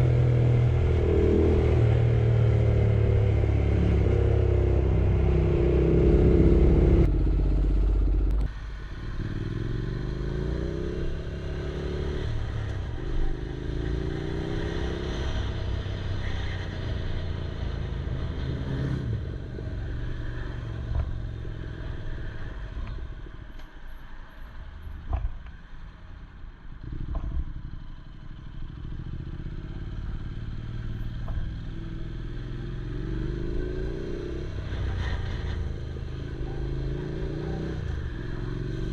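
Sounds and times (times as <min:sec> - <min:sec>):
motorcycle engine revving: 0:00.0 - 0:21.2.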